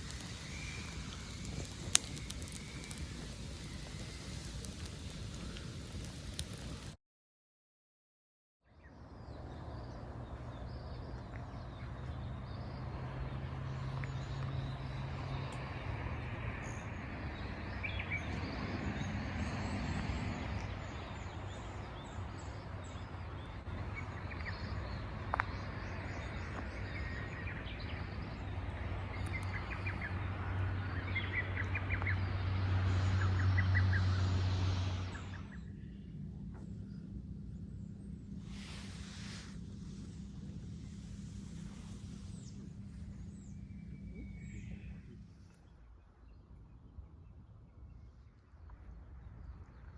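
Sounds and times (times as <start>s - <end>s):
birds chirping: 0.0s - 6.8s, 42.1s - 48.0s
steady low rumble: 0.0s - 7.0s, 9.1s - 49.9s.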